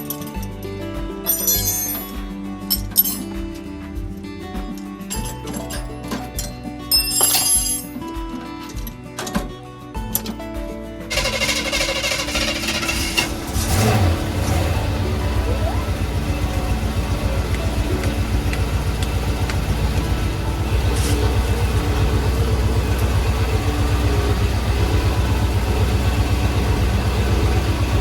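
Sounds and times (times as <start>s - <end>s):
van engine idling: 11.1s - 28.0s.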